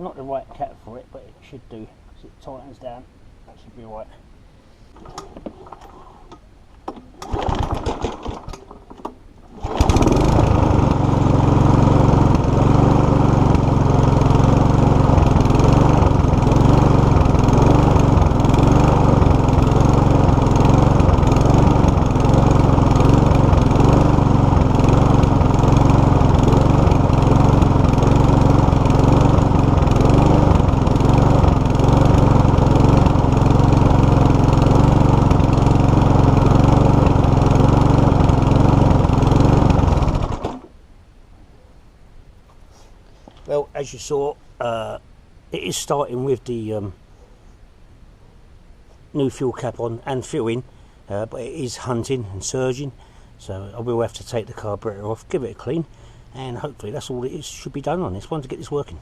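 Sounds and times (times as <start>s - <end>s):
lawnmower pull-start cranking: 4.9s - 40.7s
lawnmower engine running and surging: 4.9s - 40.8s.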